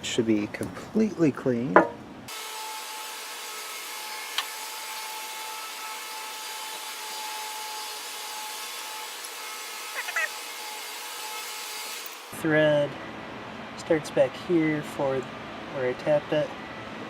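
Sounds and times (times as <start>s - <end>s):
squeaky chirps: 10.0s - 10.3s.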